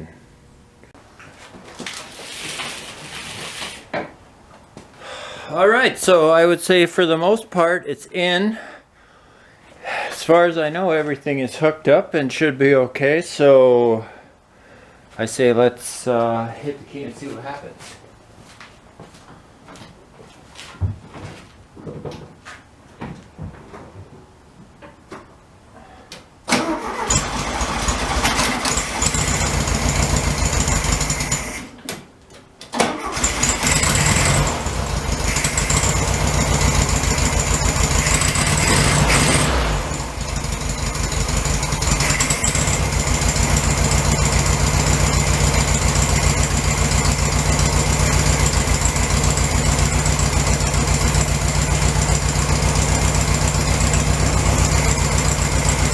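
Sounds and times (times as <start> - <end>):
car engine starting and idling: 26.5 - 31.7, 32.7 - 55.9.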